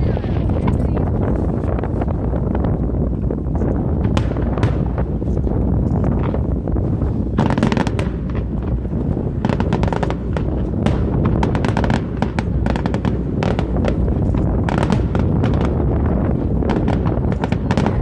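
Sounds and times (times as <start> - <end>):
fireworks crackling bursts: 3.1 - 18.0
low rumble: 13.8 - 18.0.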